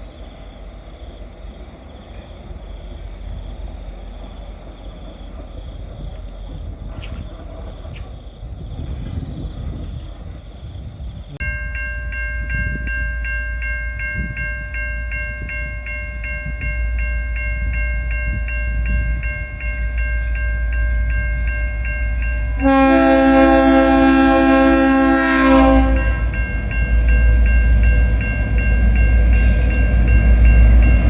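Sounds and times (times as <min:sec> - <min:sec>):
diesel locomotive rumble: 0:00.0 - 0:31.0
locomotive horn: 0:22.5 - 0:26.4.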